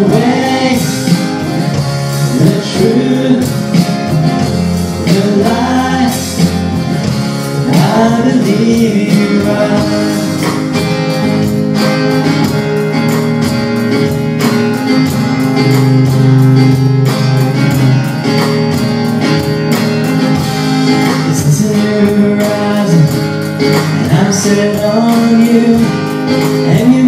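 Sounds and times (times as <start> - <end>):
person singing: 0.0 - 3.9, 4.9 - 6.8, 7.6 - 10.9, 21.0 - 27.0
guitar over held chords: 0.0 - 27.0
steady beat: 0.0 - 27.0.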